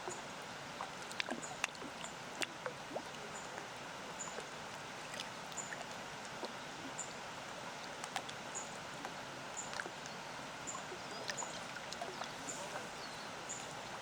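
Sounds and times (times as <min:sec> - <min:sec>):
lake waves lapping at shore: 0:00.0 - 0:14.0
bird chirping: 0:10.1 - 0:13.6.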